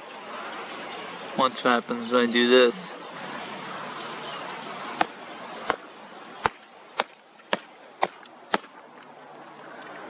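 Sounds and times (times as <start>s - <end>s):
foot stomping on ground: 5.0s - 5.8s, 6.4s - 7.2s.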